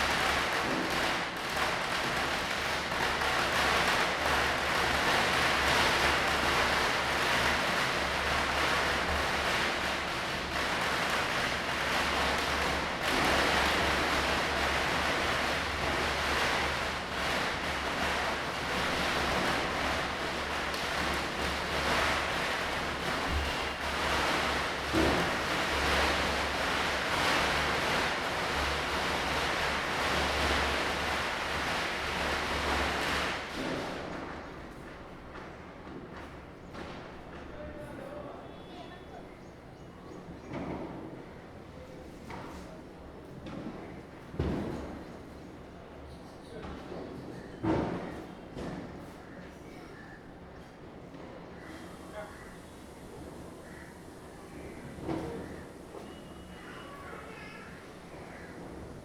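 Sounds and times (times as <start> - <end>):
distant firecrackers crackling: 0.0 - 37.7, 43.4 - 45.4.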